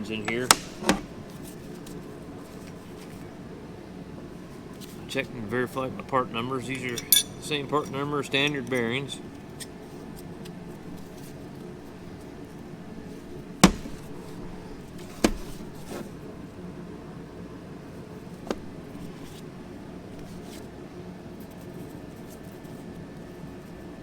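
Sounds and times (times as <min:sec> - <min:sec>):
low background hum: 0:00.0 - 0:24.0
engine parts knocking on workbench: 0:00.3 - 0:01.2, 0:13.6 - 0:14.3.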